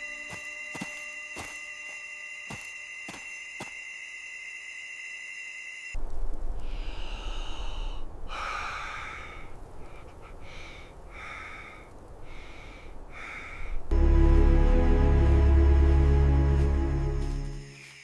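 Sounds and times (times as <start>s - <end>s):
person breathing hard: 6.6s - 13.9s
loud music: 13.9s - 17.2s.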